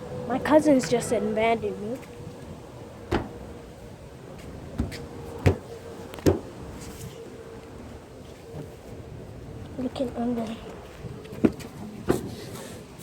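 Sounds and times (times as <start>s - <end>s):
sharp knocks: 3.1s - 3.4s, 4.8s - 6.5s.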